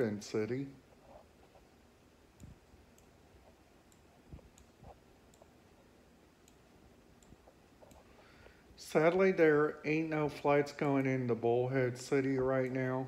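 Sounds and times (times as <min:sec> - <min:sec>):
computer mouse clicks: 0:03.9 - 0:05.6, 0:06.4 - 0:08.1.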